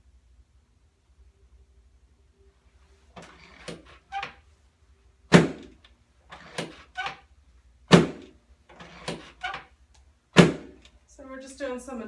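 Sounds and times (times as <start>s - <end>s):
loud sharp thud: 10.4s - 10.8s.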